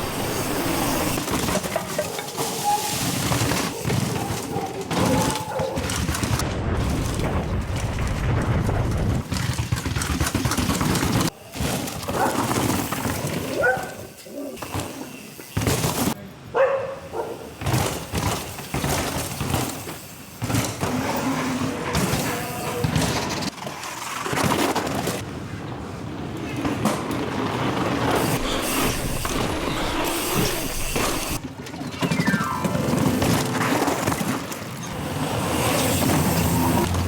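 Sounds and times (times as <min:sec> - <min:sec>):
bike chain and frame rattling: 0:00.0 - 0:06.4, 0:07.8 - 0:16.2, 0:33.4 - 0:37.0
bike tyres on dirt and stone: 0:00.0 - 0:16.2, 0:17.4 - 0:37.0.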